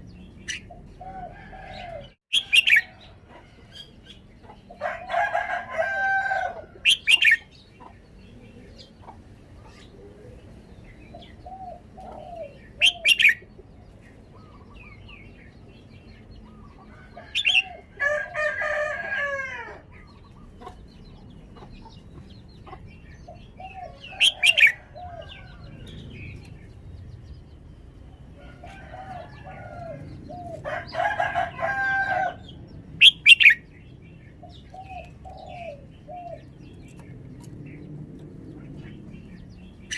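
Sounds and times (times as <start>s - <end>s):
rooster crowing: 1.1s - 3.7s, 4.8s - 6.9s, 16.9s - 19.8s, 28.4s - 32.4s
bulbul singing: 10.8s - 15.6s, 32.3s - 39.9s.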